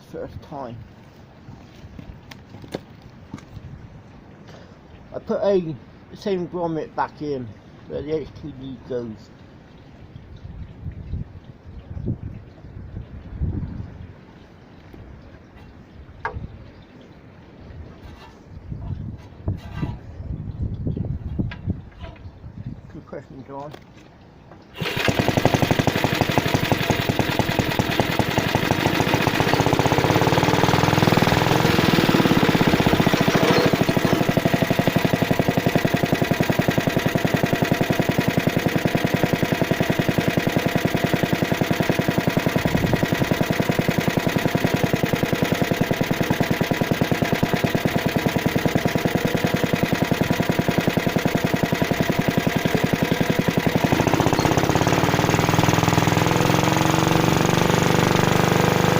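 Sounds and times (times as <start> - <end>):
lawn mower engine running: 24.7 - 58.9.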